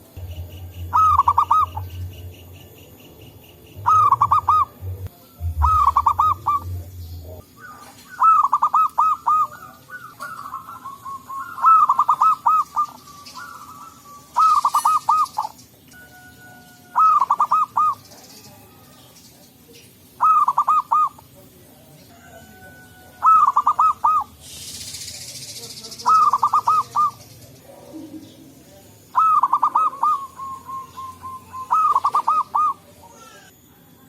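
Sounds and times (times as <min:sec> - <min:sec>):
doves cooing: 0:00.0 - 0:21.4, 0:22.1 - 0:33.6.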